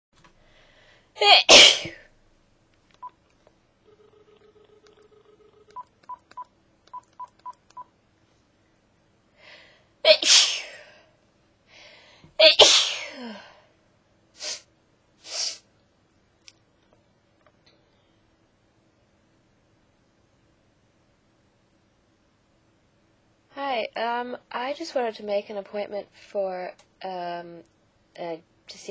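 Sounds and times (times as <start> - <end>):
person sneezing loudly: 1.2 - 2.0, 10.1 - 10.8, 12.4 - 13.4
phone dial tone: 3.8 - 7.6.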